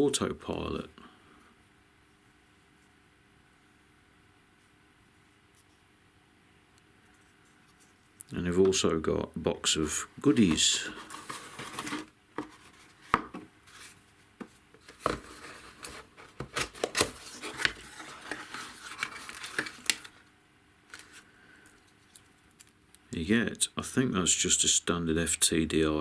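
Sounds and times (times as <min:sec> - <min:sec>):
packaging rustling: 0:10.3 - 0:14.1, 0:14.8 - 0:20.3, 0:20.9 - 0:21.3.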